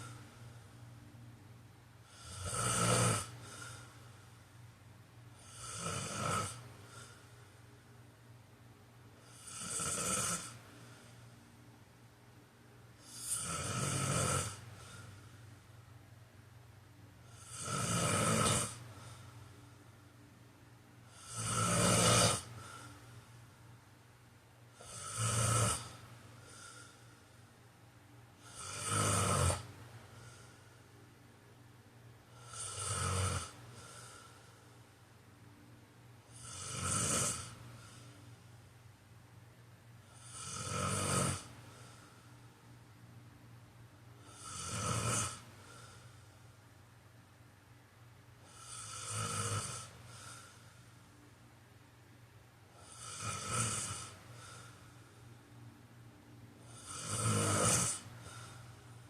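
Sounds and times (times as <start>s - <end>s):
quiet breathing: 0.0s - 59.0s
man snoring: 2.0s - 4.3s, 5.4s - 7.2s, 9.2s - 11.2s, 13.0s - 15.1s, 17.2s - 19.2s, 21.0s - 22.9s, 24.8s - 27.1s, 28.4s - 30.7s, 32.3s - 34.6s, 36.3s - 38.1s, 40.0s - 42.2s, 44.2s - 46.2s, 48.4s - 50.8s, 52.7s - 55.0s, 56.6s - 58.7s.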